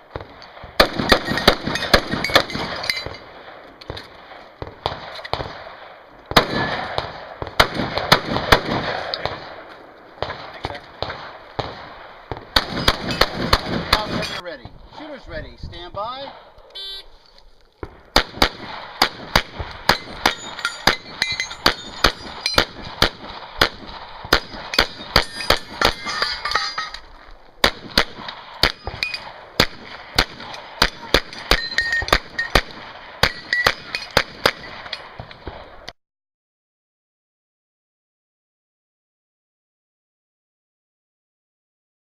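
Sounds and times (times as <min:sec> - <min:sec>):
pistol shots: 0:00.1 - 0:14.4, 0:17.8 - 0:26.2, 0:27.6 - 0:35.8
metallic clangs: 0:19.9 - 0:22.6, 0:24.8 - 0:27.1, 0:31.3 - 0:32.6.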